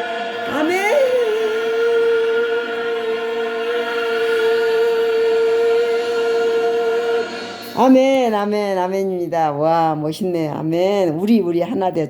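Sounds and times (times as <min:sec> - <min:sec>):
singers holding long note: 0:00.0 - 0:08.5.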